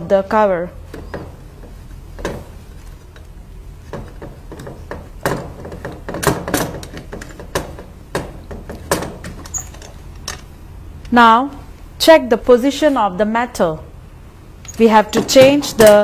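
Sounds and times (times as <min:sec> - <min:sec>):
low steady hum: 0:00.0 - 0:16.0
clicks and knocks: 0:00.9 - 0:10.5.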